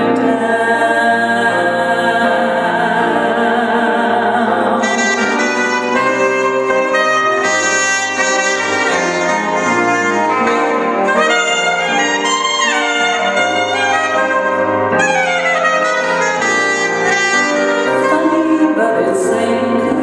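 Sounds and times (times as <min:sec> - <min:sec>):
band backing: 0:00.0 - 0:20.0
saxophone solo: 0:04.8 - 0:19.1.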